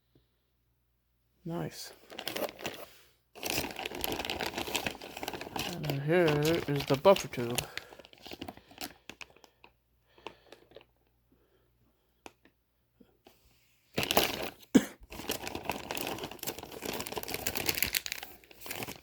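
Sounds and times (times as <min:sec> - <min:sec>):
plastic crinkling and tearing: 0:02.0 - 0:10.9, 0:14.0 - 0:19.0.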